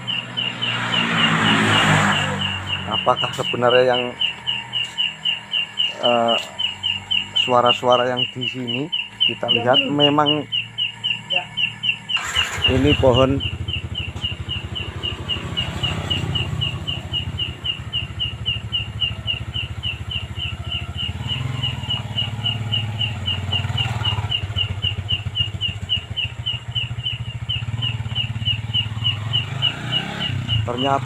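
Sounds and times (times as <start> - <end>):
speaker talking: 0.0 - 20.0, 30.5 - 31.0
high-pitched insect chirping: 0.0 - 31.0.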